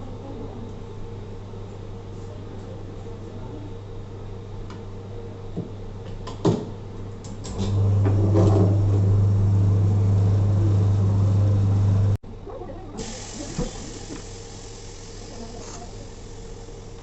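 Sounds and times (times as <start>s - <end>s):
workshop machine humming: 7.2s - 12.2s.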